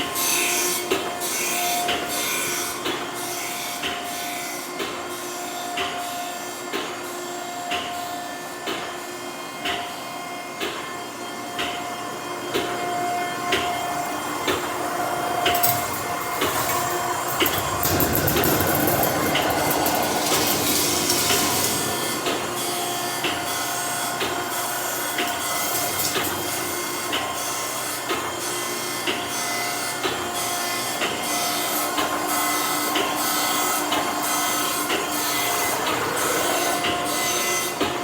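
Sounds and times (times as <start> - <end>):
surface grinder grinding: 15.4 - 23.8, 25.3 - 27.1.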